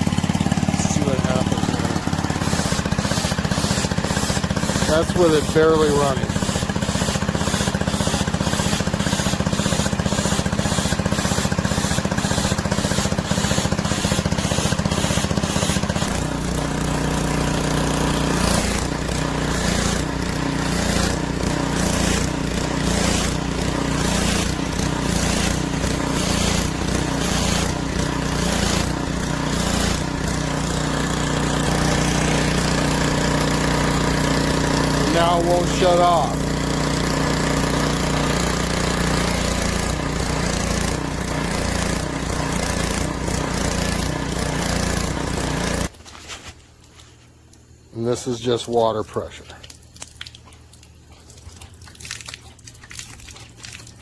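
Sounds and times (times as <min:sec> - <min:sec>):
pressure washer pulsing: 0:00.0 - 0:46.0, 0:47.5 - 0:54.0.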